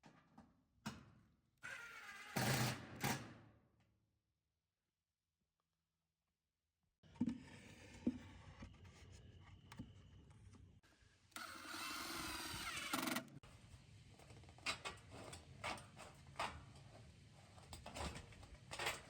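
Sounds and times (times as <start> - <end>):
power tool whining: 11.4 - 13.4.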